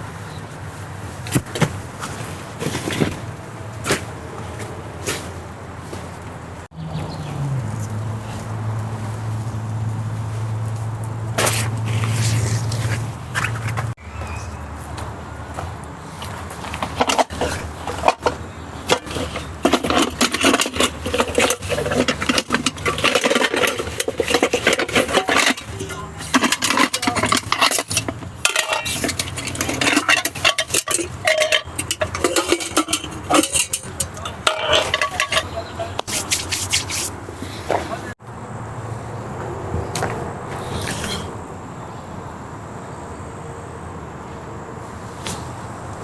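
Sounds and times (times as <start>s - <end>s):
utensils clinking against cookware: 16.6s - 37.1s
short metallic rings: 17.1s - 36.9s.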